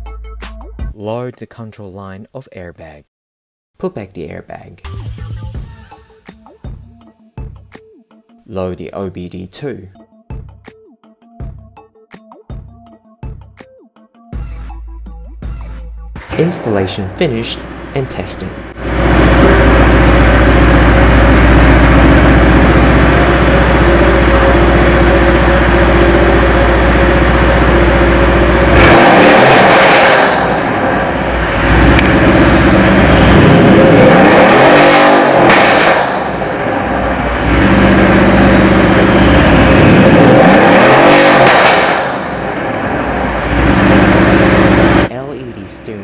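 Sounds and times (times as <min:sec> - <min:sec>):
car engine revving: 0:16.2 - 0:45.1.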